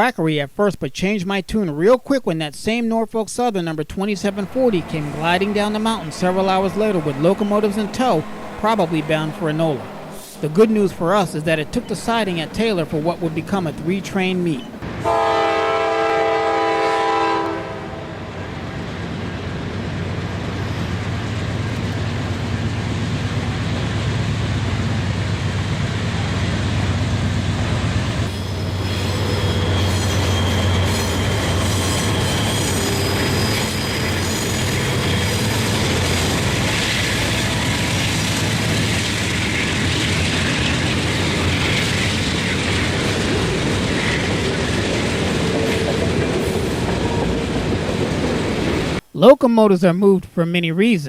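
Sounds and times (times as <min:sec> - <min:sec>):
train engine rumble: 0:04.0 - 0:49.1
train wheels on rails: 0:04.2 - 0:15.2, 0:18.3 - 0:49.0
locomotive air horn chord: 0:04.3 - 0:13.4, 0:15.0 - 0:18.4
wheel squeal: 0:28.2 - 0:38.3.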